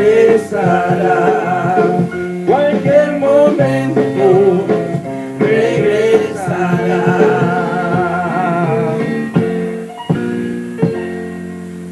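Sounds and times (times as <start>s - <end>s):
guitar chords: 0.0s - 11.9s
woman singing with vibrato: 5.6s - 9.1s.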